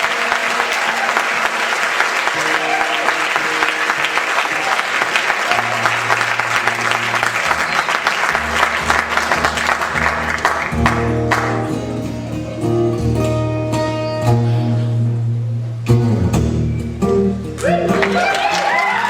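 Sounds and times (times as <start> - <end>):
audience applause: 0.0 - 11.8, 17.6 - 19.0
guitar chords: 0.0 - 19.0.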